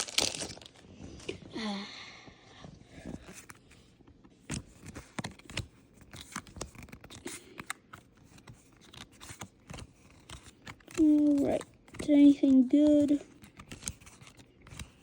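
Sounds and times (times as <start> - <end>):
trading cards being handled: 3.2 - 15.0.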